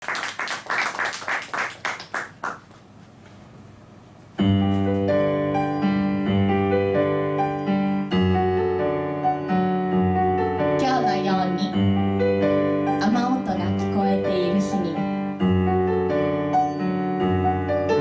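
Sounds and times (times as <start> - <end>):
applause: 0.0 - 2.8
piano chords: 3.8 - 18.0.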